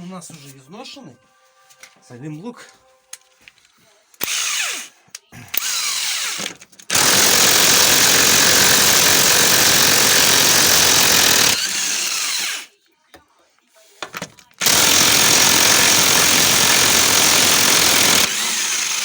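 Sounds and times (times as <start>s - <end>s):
pneumatic impact wrench: 4.2s - 4.9s, 5.5s - 12.7s, 14.6s - 19.0s.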